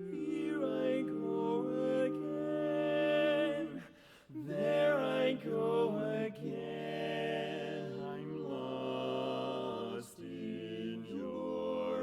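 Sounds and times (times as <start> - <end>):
barbershop quartet singing: 0.0 - 12.0.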